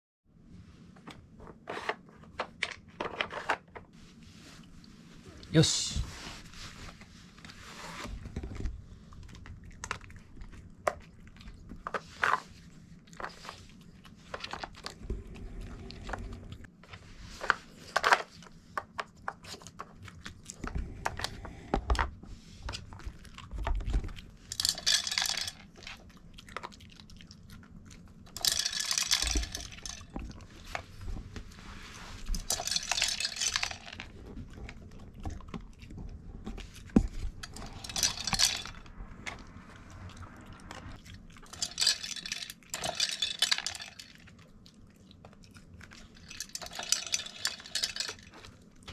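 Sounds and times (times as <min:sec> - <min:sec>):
treats rattling inside toy: 0:24.4 - 0:26.1, 0:28.4 - 0:30.2, 0:32.3 - 0:34.1, 0:37.4 - 0:38.8, 0:41.5 - 0:44.3, 0:46.0 - 0:48.6.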